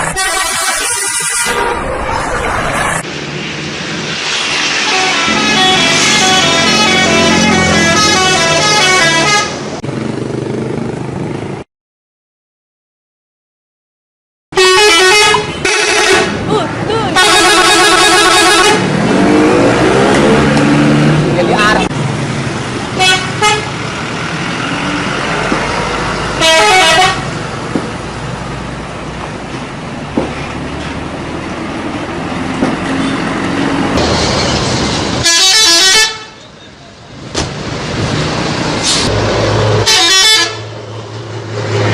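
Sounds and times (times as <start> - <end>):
multi-tone bus horn tune: 0.0 - 1.9, 4.8 - 9.7, 14.5 - 16.5, 17.1 - 19.0, 23.0 - 23.7, 26.4 - 27.4, 35.2 - 36.5, 39.8 - 40.7
traffic noise: 0.0 - 11.6, 14.6 - 41.9.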